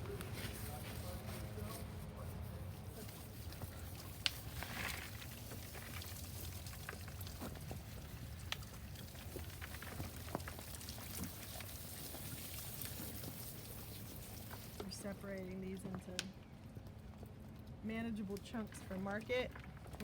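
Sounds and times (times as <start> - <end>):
roots cracking and rustling: 0.0 - 15.4.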